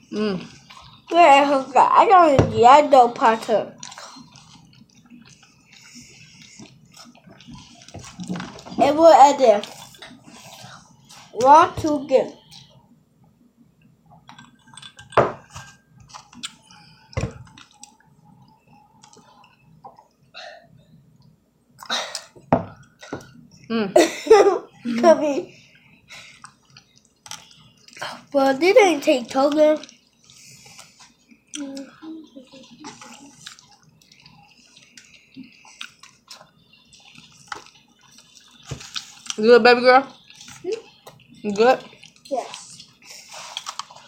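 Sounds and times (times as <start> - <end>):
mouth smacks and chewing: 3.8 - 8.7, 14.1 - 20.2, 25.7 - 28.1, 29.8 - 39.4, 40.2 - 44.0.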